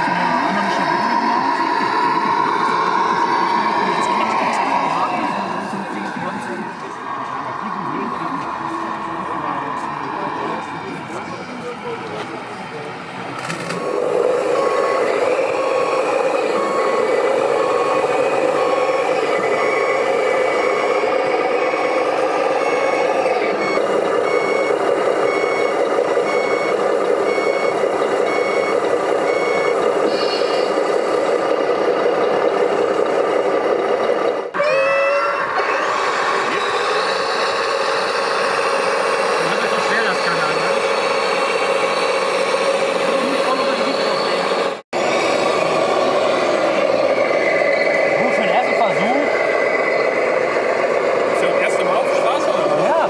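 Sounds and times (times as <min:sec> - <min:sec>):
diesel engine drone: 0:00.0 - 0:53.0
electronic reversing beeper: 0:13.4 - 0:31.1.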